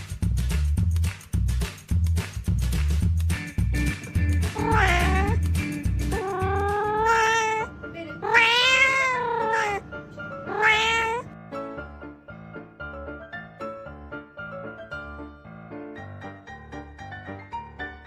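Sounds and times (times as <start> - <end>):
background music with a beat: 0.0 - 6.8
cat meowing: 4.6 - 5.4, 6.1 - 11.3.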